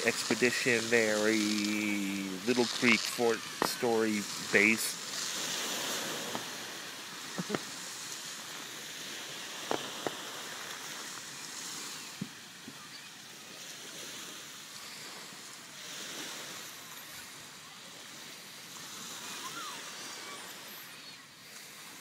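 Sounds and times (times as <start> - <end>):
surf washing: 0.0 - 22.0
sharp firework pops: 9.6 - 10.2.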